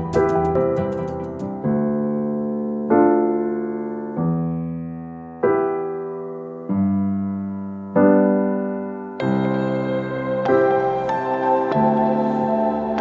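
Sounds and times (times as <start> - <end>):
slow calm keyboard chords: 0.0 - 2.2.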